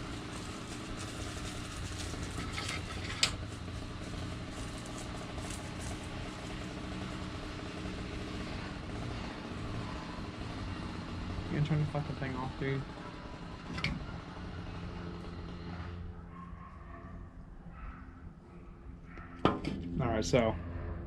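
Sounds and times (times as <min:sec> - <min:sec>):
engine idling: 0:00.0 - 0:16.2.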